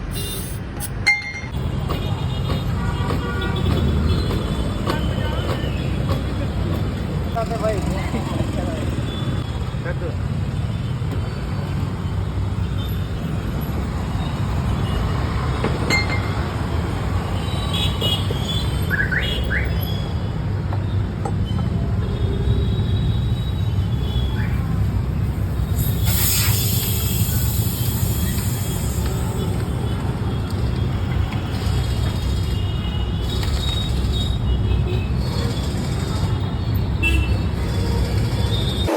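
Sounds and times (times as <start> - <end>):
burst of hiss: 25.6 - 29.4.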